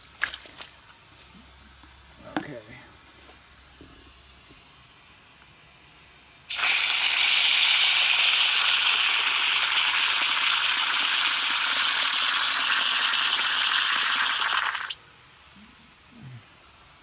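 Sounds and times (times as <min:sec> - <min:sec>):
water running into a container: 0:06.5 - 0:15.0.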